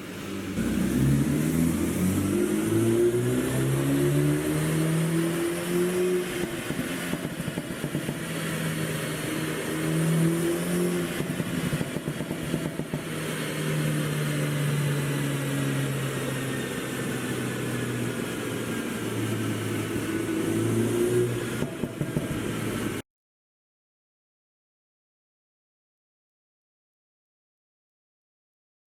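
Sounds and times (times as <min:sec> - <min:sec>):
car engine revving: 0:00.0 - 0:23.0
exhaust crackling and popping: 0:06.3 - 0:08.6, 0:11.1 - 0:13.1, 0:17.7 - 0:23.0.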